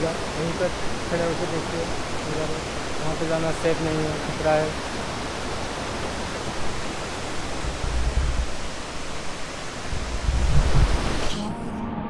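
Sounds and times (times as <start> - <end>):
waterfall rushing: 0.0 - 11.5
wind buffeting microphone: 4.8 - 11.4
music: 11.3 - 12.0.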